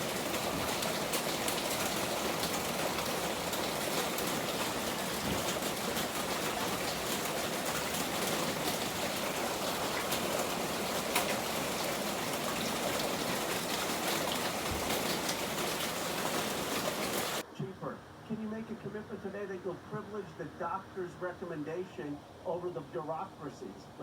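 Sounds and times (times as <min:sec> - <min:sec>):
heavy rain falling: 0:00.0 - 0:17.4.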